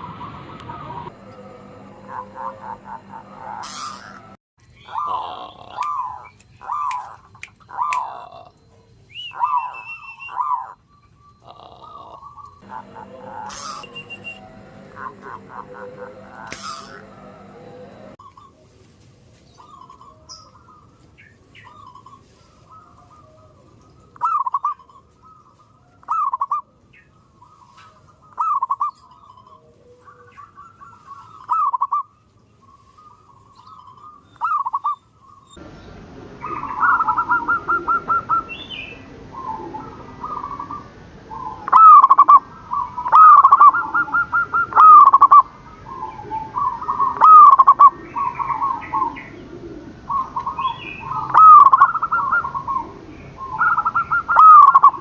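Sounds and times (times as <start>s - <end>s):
noisy background: 0.0s - 4.4s, 11.4s - 18.2s
doves cooing: 0.0s - 18.9s, 19.5s - 26.7s, 27.4s - 55.0s.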